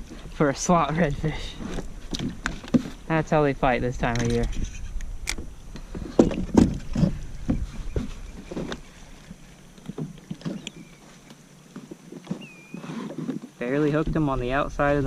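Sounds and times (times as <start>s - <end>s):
knocks and thumps on kayak hull: 5.4s - 11.0s.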